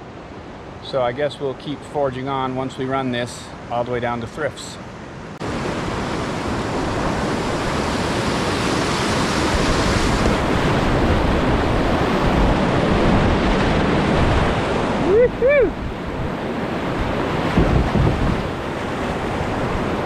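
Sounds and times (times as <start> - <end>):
whitewater rushing: 2.2 - 20.0
wind buffeting microphone: 5.6 - 20.0.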